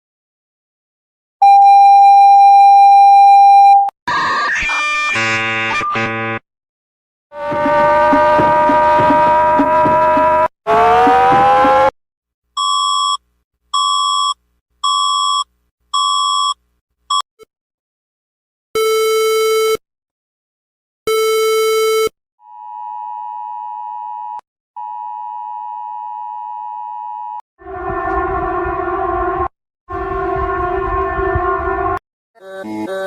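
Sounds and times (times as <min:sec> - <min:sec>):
horn-like alert tone sweeping up: 0:07.4 - 0:11.9, 0:27.6 - 0:32.0.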